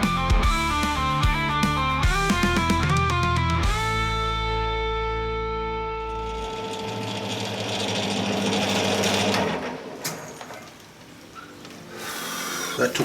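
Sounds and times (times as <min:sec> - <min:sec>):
metal lathe whining: 0:06.0 - 0:10.1.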